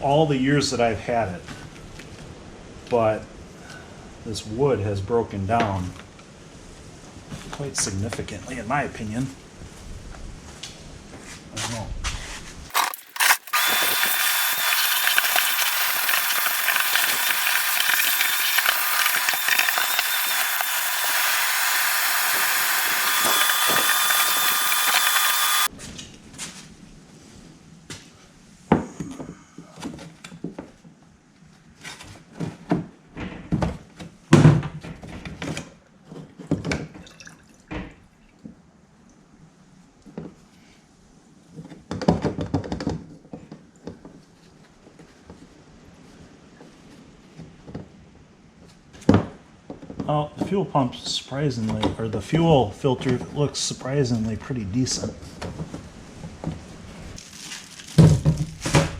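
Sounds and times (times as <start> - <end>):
shop tool hissing whir: 12.7 - 25.7.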